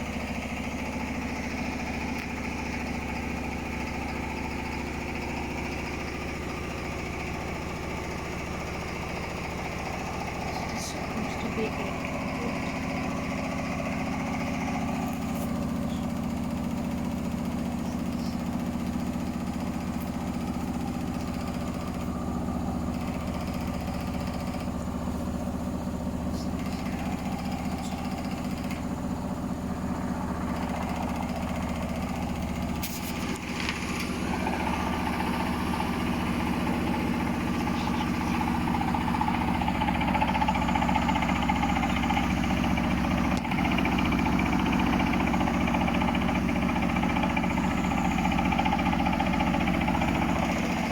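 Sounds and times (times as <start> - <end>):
washing machine spinning: 0.0 - 50.9.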